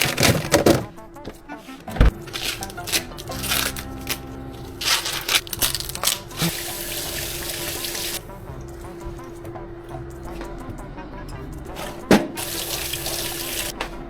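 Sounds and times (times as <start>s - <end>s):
knocks and clatters: 0.0s - 1.0s.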